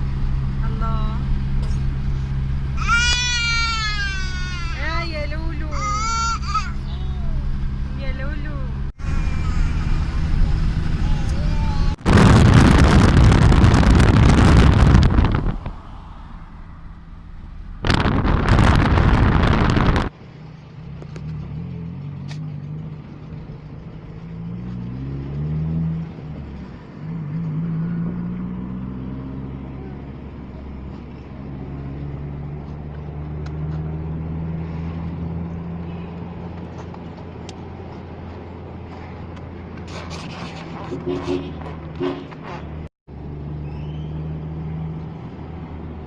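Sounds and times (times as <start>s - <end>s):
vehicle engine humming: 0.0s - 46.0s
wind rushing on microphone: 10.2s - 16.7s, 17.4s - 20.1s.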